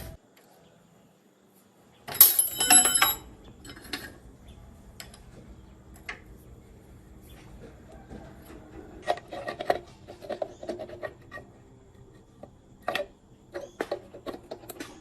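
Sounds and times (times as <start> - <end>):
faint low hum: 0.0 - 15.0
metal parts clinking: 2.1 - 4.2
bright metallic ringing: 2.2 - 3.8.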